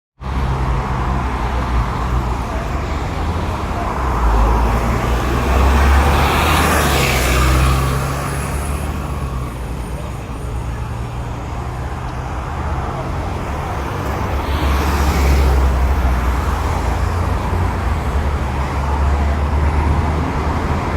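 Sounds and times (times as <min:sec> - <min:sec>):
road traffic: 0:00.2 - 0:20.9
vehicle engine humming: 0:00.2 - 0:20.9
vehicle passing: 0:01.6 - 0:10.2.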